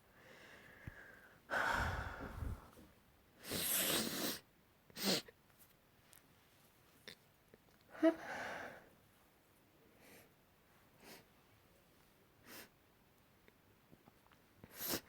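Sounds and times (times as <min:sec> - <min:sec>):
person breathing audibly: 0:00.2 - 0:02.8.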